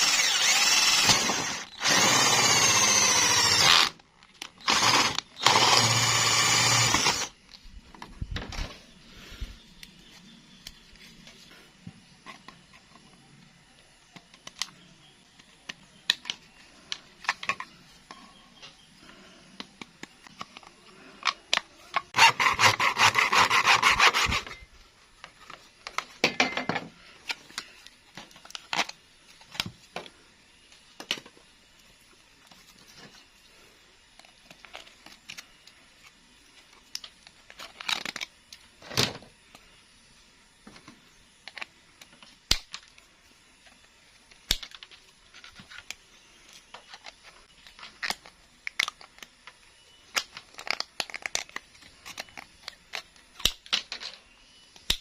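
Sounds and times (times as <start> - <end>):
fast rasping scrapes: 22.2 - 24.6.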